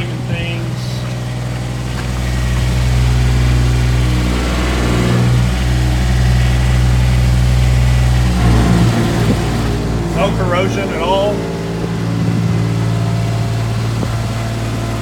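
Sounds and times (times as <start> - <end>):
pony motor running: 0.0 - 15.0.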